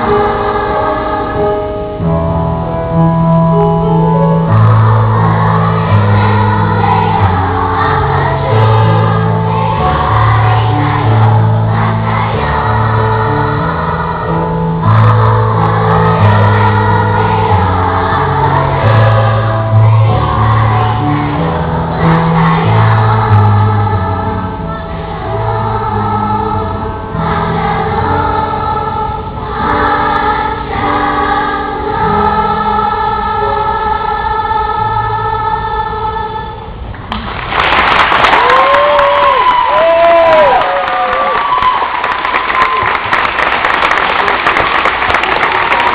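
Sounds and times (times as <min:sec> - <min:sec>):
choral singing with instruments: 0:00.0 - 0:02.2, 0:04.1 - 0:37.1
crowd cheering and shouting: 0:38.3 - 0:43.0.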